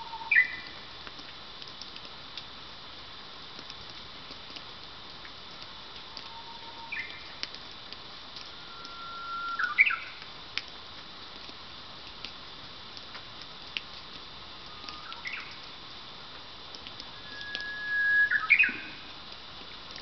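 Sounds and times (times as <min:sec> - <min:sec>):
bush warbler singing: 0:17.2 - 0:18.9
short bird call: 0:17.2 - 0:19.0.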